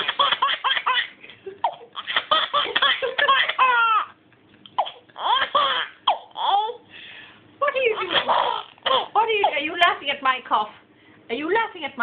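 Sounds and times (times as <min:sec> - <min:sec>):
baby giggling: 0:00.0 - 0:04.2, 0:04.8 - 0:06.8, 0:07.9 - 0:09.6.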